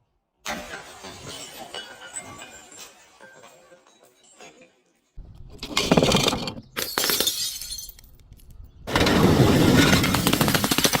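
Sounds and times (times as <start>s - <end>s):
glass bottles smashing: 0.5s - 4.6s, 5.8s - 8.1s
crunching glass shards: 6.8s - 8.1s.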